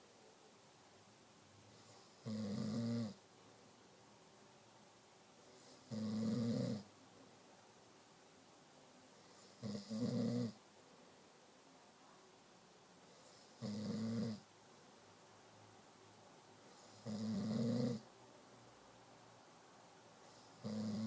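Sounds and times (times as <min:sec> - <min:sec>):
quiet breathing: 0:01.5 - 0:03.6, 0:04.4 - 0:07.8, 0:08.5 - 0:21.0
person snoring: 0:01.8 - 0:03.2, 0:16.8 - 0:18.0, 0:20.4 - 0:21.0.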